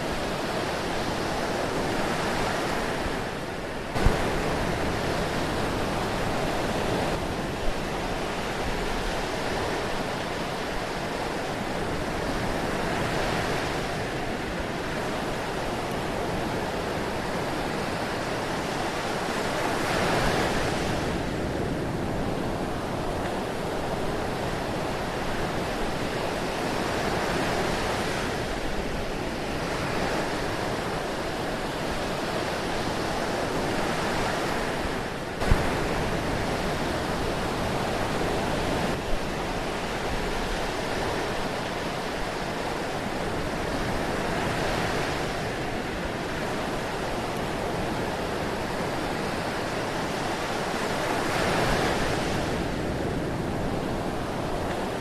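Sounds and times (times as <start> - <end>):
ocean surf washing: 0.0 - 55.0.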